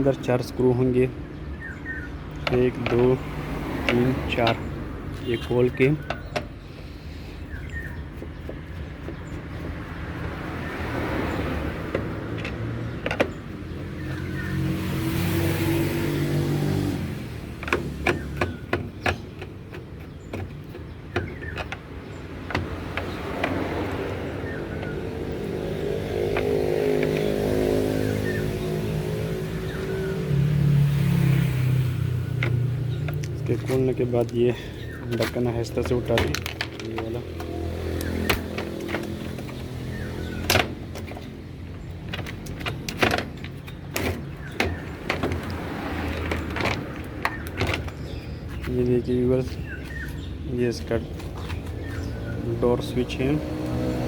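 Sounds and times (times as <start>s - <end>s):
plastic parts clicking and knocking: 11.9s - 13.6s, 17.5s - 24.0s, 35.0s - 48.2s.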